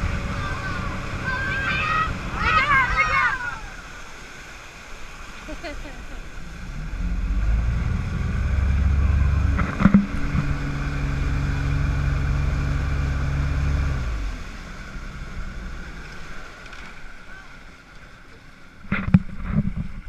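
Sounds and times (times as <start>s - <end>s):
motorboat engine running: 0.0s - 20.0s.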